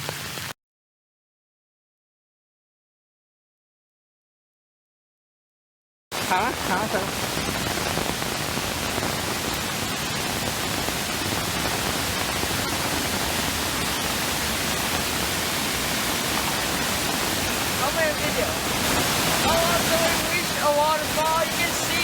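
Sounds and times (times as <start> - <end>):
heavy rain: 0.0 - 0.6, 6.1 - 22.0
rainwater pouring down hillside: 0.0 - 0.6, 6.1 - 22.0.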